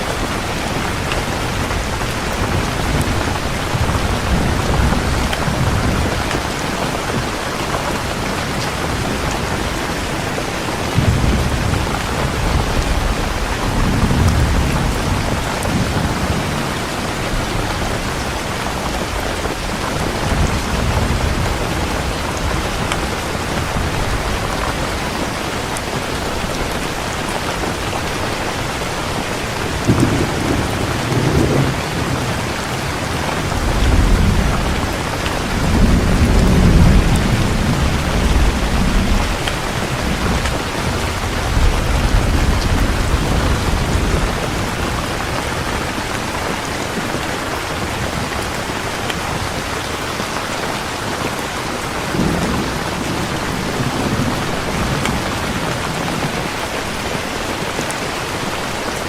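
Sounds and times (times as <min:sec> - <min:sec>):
heavy rain falling: 0:00.0 - 0:59.0
rolling thunder: 0:08.1 - 0:25.5, 0:28.0 - 0:46.0.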